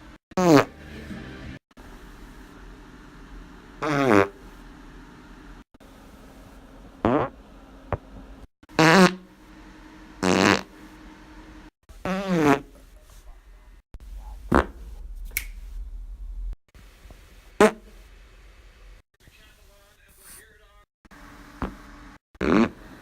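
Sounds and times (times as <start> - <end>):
short buzzing farts: 0.4 - 0.8, 3.8 - 4.4, 7.0 - 7.4, 8.7 - 9.3, 10.2 - 10.8, 11.9 - 12.8, 14.5 - 14.9, 17.6 - 17.9, 22.4 - 23.0.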